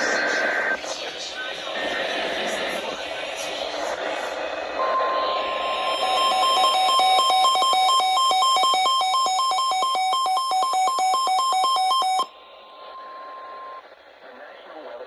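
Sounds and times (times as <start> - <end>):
weather radio alarm tone: 4.8 - 12.3.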